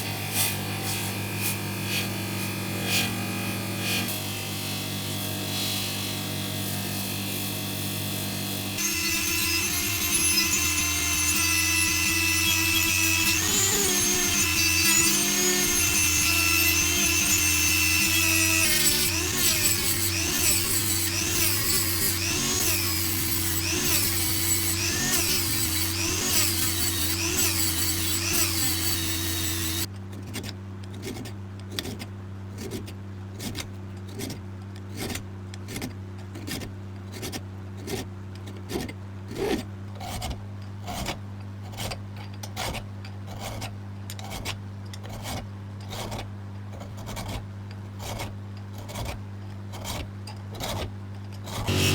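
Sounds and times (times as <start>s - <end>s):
power tool running on metal: 0.0s - 29.9s, 51.5s - 51.9s.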